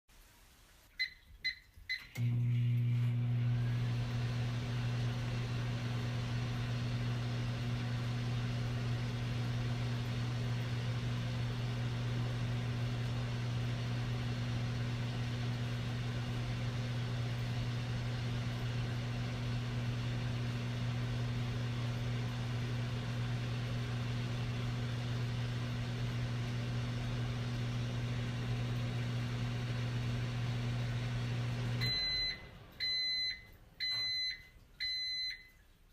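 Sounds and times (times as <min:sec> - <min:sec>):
microwave oven humming: 0:02.0 - 0:35.6
keypad beeps: 0:31.8 - 0:35.5.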